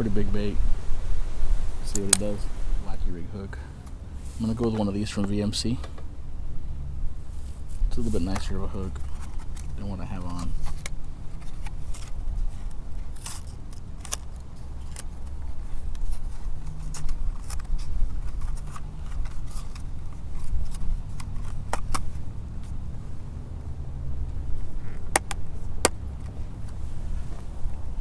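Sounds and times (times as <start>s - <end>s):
wind buffeting microphone: 0.0s - 28.0s.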